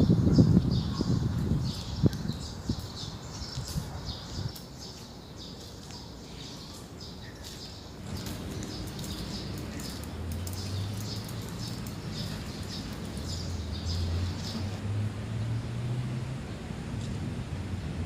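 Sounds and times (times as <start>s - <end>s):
small birds chirping: 0.0s - 14.8s
passing traffic engine rumble: 7.8s - 18.0s.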